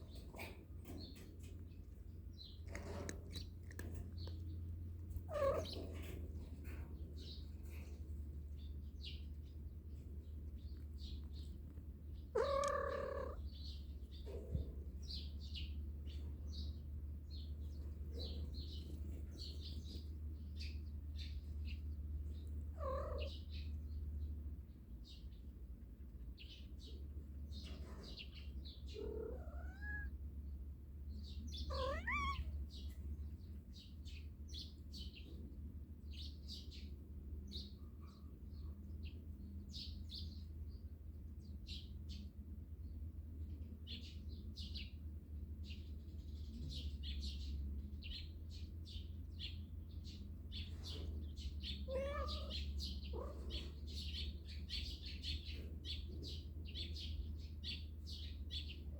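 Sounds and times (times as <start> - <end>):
cat meowing: 5.3 - 5.9, 12.4 - 13.4, 22.8 - 23.4, 28.9 - 30.2, 31.6 - 32.7, 51.8 - 53.6.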